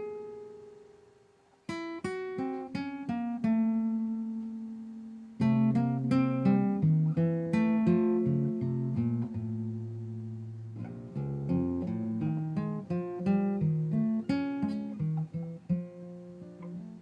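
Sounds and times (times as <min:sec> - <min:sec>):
plucked string melody: 0:01.7 - 0:17.0.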